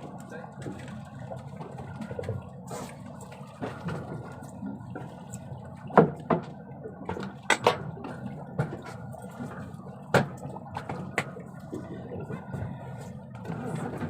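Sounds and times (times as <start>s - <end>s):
water sloshing and splashing: 0.0s - 14.0s.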